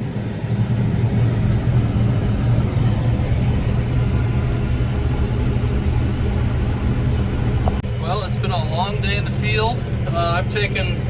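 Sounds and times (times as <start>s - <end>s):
combine engine drone: 0.0s - 11.0s.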